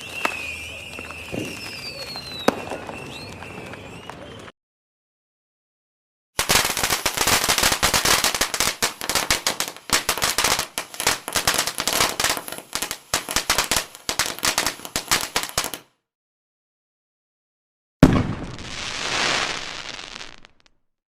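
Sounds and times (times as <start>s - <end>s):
firecrackers cracking: 0.0s - 4.4s, 6.4s - 15.8s, 18.0s - 20.7s.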